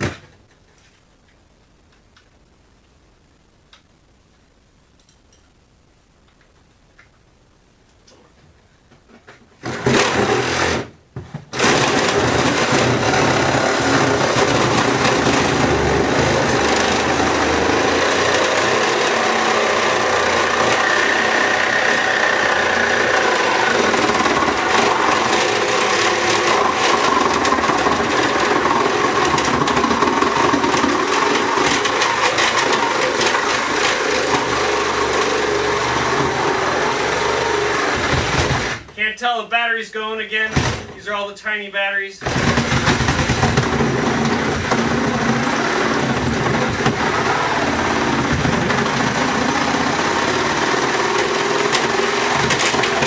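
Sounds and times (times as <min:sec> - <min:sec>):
cordless power saw cutting: 0:09.7 - 0:10.8, 0:11.6 - 0:38.8, 0:42.2 - 0:53.0.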